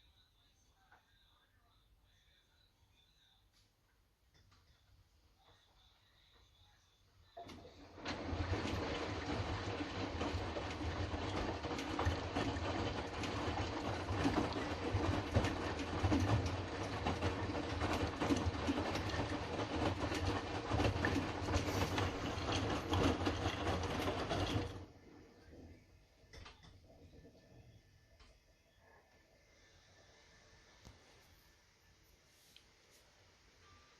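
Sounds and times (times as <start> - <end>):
washing machine drum churning: 7.4 - 27.6.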